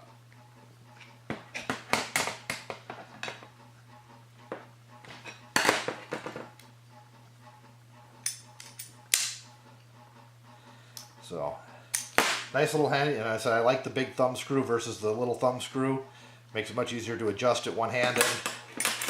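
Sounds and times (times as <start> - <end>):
screwdriver clinking and scraping metal: 8.2 - 9.4.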